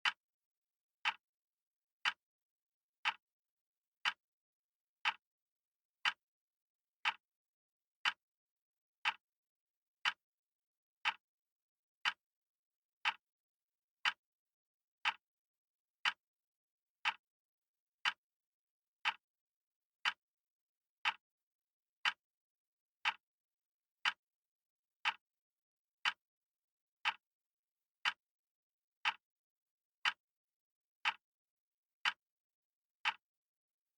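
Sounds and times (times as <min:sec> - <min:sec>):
clock ticking: 0:00.0 - 0:00.2, 0:01.0 - 0:01.2, 0:02.0 - 0:02.2, 0:03.0 - 0:03.2, 0:04.0 - 0:04.2, 0:05.0 - 0:05.2, 0:07.0 - 0:07.2, 0:08.0 - 0:08.2, 0:09.0 - 0:09.2, 0:11.0 - 0:11.2, 0:12.0 - 0:12.2, 0:13.0 - 0:13.2, 0:15.0 - 0:15.2, 0:16.0 - 0:16.2, 0:17.0 - 0:17.2, 0:19.0 - 0:19.2, 0:20.0 - 0:20.2, 0:21.0 - 0:21.2, 0:22.0 - 0:22.2, 0:23.0 - 0:23.2, 0:24.0 - 0:24.2, 0:25.0 - 0:25.2, 0:26.0 - 0:26.2, 0:27.0 - 0:27.2, 0:28.0 - 0:28.2, 0:29.0 - 0:29.2, 0:30.0 - 0:30.2, 0:31.0 - 0:31.2, 0:32.0 - 0:32.2, 0:33.0 - 0:33.3.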